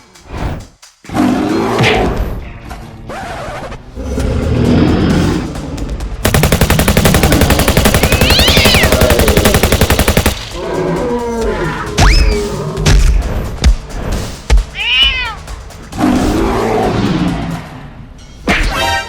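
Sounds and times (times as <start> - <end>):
rapid machine-gun fire: 6.2 - 10.9
cartoon animal cries: 8.2 - 8.9.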